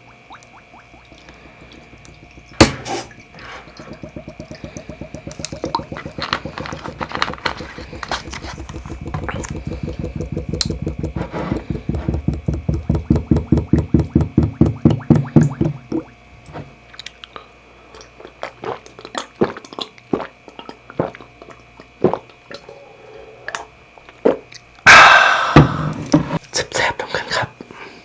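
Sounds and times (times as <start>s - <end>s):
fast even knocks: 3.7s - 16.1s.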